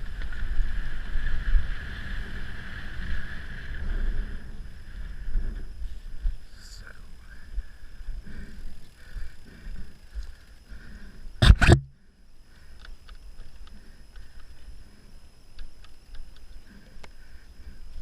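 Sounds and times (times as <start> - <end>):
wind rumble on microphone: 0.0 - 6.5.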